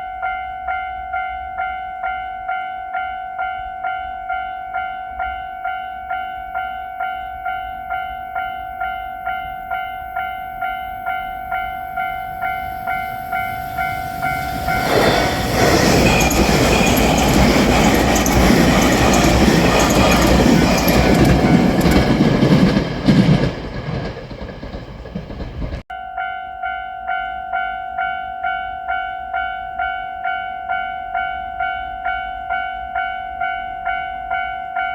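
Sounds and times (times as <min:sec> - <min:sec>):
railroad crossing bell ringing: 0:00.0 - 0:24.4, 0:25.9 - 0:34.9
electric train passing: 0:08.8 - 0:25.8.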